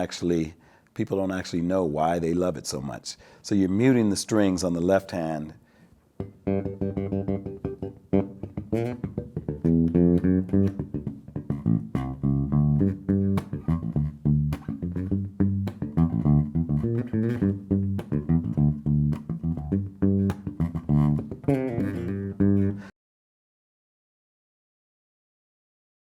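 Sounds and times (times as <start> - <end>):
electric bass guitar playing: 6.2 - 22.9.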